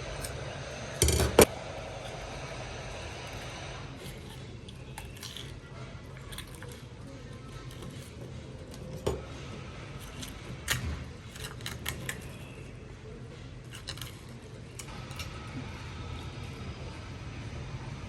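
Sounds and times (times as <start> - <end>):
low steady hum: 0.0 - 18.0
kitchen utensils clicking and knocking: 1.0 - 1.5.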